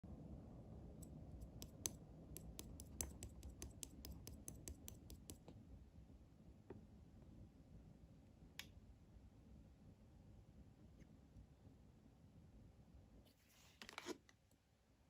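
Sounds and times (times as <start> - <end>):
slime clicking by hand: 1.0 - 5.5.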